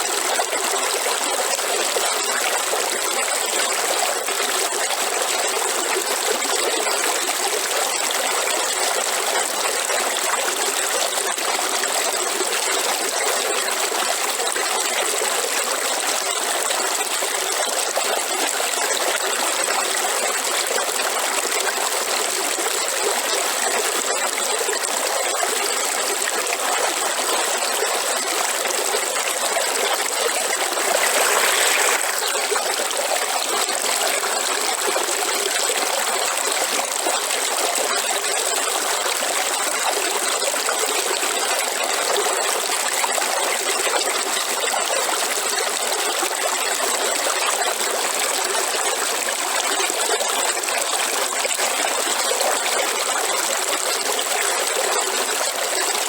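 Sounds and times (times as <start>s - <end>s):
river water flowing: 22.5s - 56.0s.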